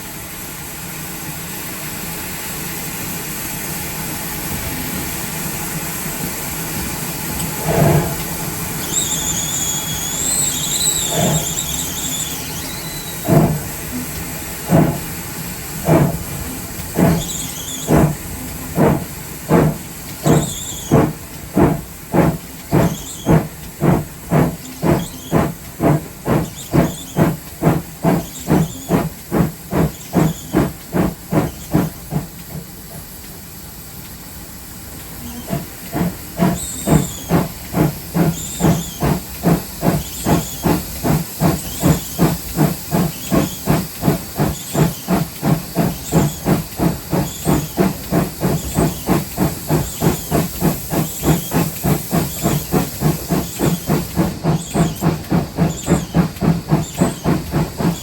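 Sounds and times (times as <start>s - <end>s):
steady hiss of steam: 0.0s - 58.0s
steam locomotive chuffing: 0.0s - 58.0s
faint high squeaks: 8.8s - 13.6s.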